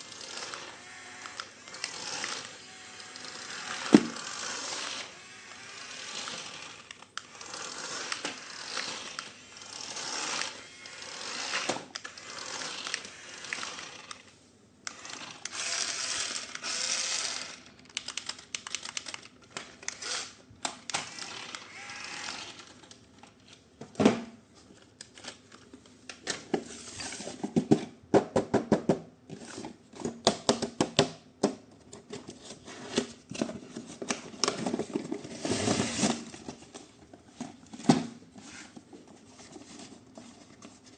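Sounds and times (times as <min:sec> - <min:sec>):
plastic toy parts clicking: 0:10.2 - 0:23.0.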